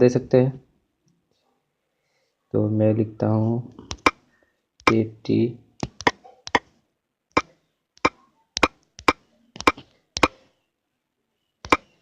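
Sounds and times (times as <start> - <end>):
phone keyboard clicks: 3.8 - 4.2, 5.8 - 6.7, 8.0 - 10.4, 11.7 - 12.0.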